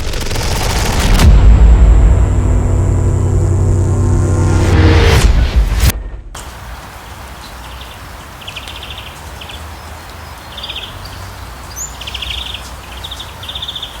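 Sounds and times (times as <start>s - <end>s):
bird chirping trills: 6.4s - 14.0s.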